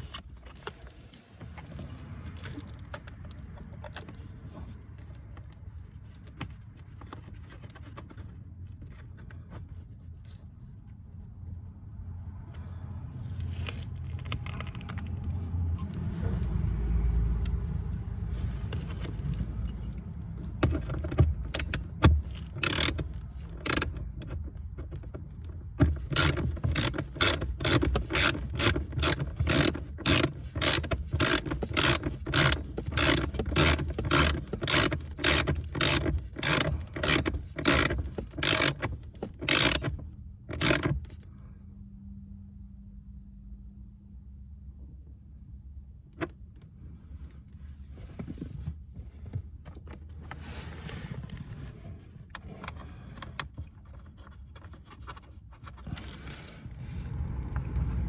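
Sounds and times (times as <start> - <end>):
sharp mechanical clicks: 22.4 - 23.9, 26.1 - 39.9, 40.6 - 41.0
low rumble: 56.7 - 58.0.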